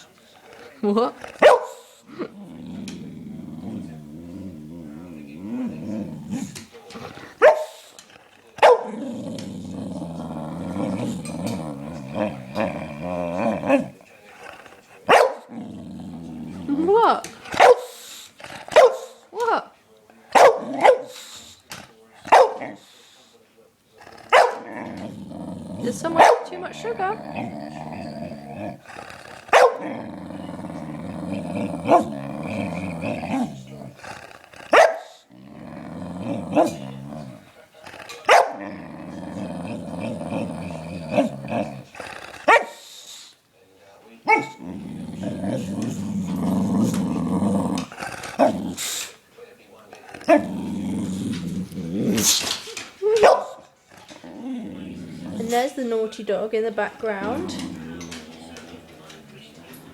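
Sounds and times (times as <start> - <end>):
puppy barking: 1.4 - 1.8, 7.4 - 7.7, 8.6 - 8.9, 15.1 - 15.4, 18.8 - 19.1, 20.4 - 21.1, 22.3 - 22.6, 24.3 - 24.6, 26.2 - 26.5, 29.5 - 29.8, 34.7 - 35.1, 38.3 - 38.6, 42.5 - 42.8, 53.2 - 53.6
puppy grumbling: 2.1 - 7.4, 8.8 - 17.4, 24.0 - 42.5, 44.2 - 49.0, 49.9 - 52.8, 53.9 - 56.1, 57.0 - 59.9.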